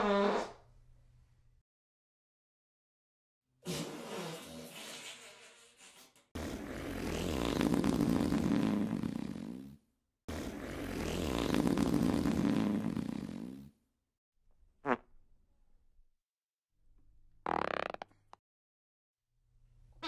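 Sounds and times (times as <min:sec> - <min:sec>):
fart sound effect: 0:00.0 - 0:00.6, 0:06.4 - 0:13.7, 0:14.8 - 0:15.1, 0:17.4 - 0:18.2.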